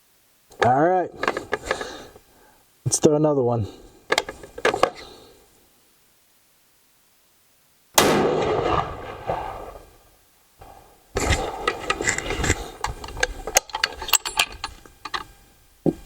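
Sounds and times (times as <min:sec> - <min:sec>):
rifle handling clicks and scraping: 0:00.5 - 0:02.2, 0:04.1 - 0:05.2, 0:10.6 - 0:15.4
rifle shot: 0:08.0 - 0:12.8.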